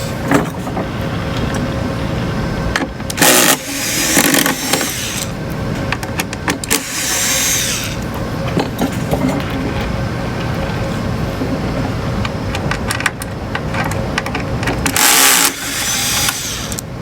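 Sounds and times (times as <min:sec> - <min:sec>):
steady low hum: 0:00.0 - 0:17.0
powered screwdriver whirring: 0:03.2 - 0:05.4, 0:06.7 - 0:08.0, 0:14.9 - 0:16.8.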